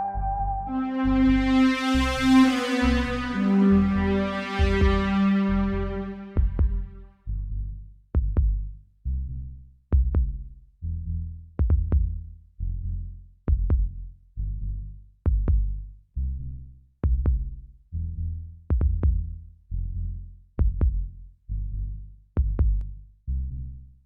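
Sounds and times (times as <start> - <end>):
low synth bass note: 0.0 - 7.1.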